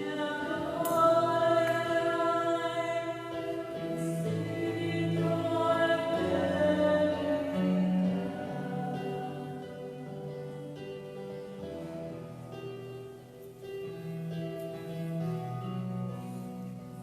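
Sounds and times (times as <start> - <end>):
choir singing a slow hymn: 0.0 - 13.0.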